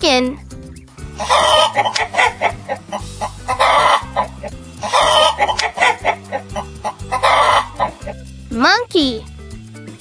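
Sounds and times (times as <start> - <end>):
bouncy children's music: 0.0 - 10.0
chicken clucking: 1.2 - 8.2.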